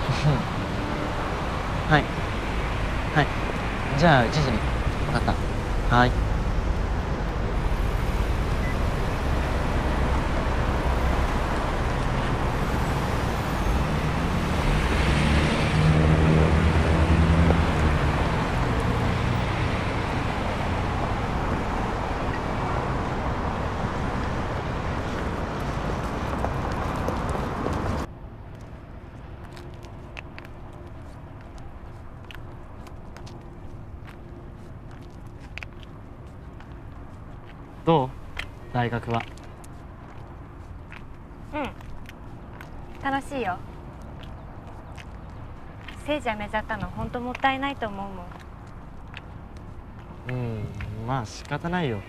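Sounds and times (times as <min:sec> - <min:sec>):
road traffic noise: 0:00.0 - 0:52.0
vehicle engine passing close: 0:04.0 - 0:28.1.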